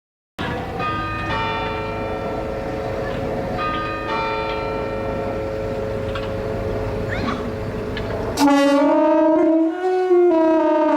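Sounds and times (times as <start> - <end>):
bells ringing: 0.4 - 8.4
steady low hum: 0.5 - 8.4.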